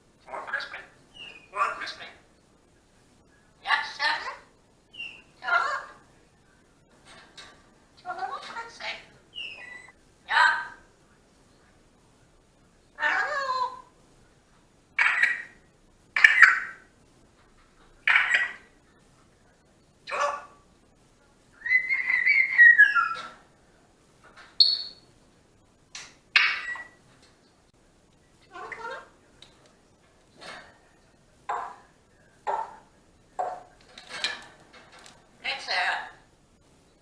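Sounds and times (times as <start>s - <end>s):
parrot calls: 8.2s - 10.8s, 13.0s - 13.9s, 15.0s - 15.6s, 16.2s - 16.9s, 18.0s - 18.7s, 21.6s - 23.4s, 26.3s - 27.0s, 28.5s - 29.1s
parrot whistling: 9.4s - 9.9s, 21.6s - 23.2s.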